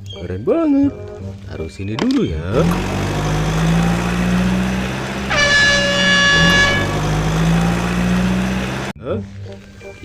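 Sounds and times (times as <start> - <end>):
low engine drone: 2.5 - 8.9
truck horn blast: 2.8 - 8.9.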